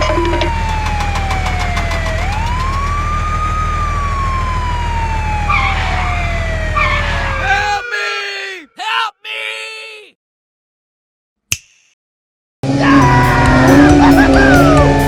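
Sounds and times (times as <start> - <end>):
low engine hum: 0.0 - 7.4
emergency siren wailing: 0.0 - 8.6, 12.7 - 15.0.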